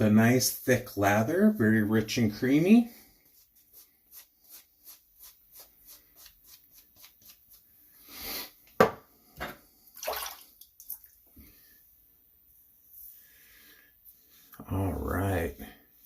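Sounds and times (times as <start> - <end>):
shaving brush lathering soap: 3.2 - 7.7
wet splashy sounds: 10.0 - 11.2.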